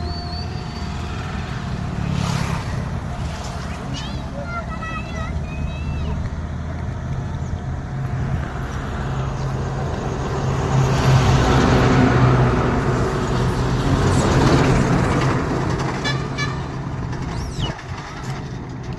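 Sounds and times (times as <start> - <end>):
road noise of passing traffic: 0.0 - 18.9.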